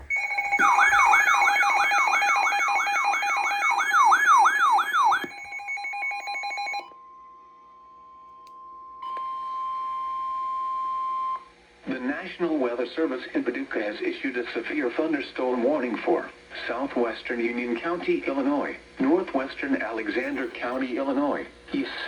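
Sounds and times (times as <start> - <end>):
steady electronic tones: 0.0 - 6.8
high-pitched alarm tone: 0.0 - 6.9.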